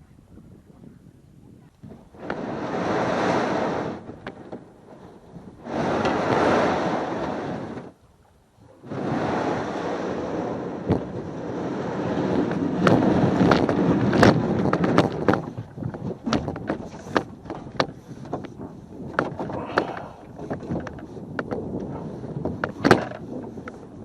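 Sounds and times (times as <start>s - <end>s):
wind on microphone: 0.0s - 24.0s
knocks and clatters on canoe: 4.0s - 8.0s, 10.8s - 24.0s.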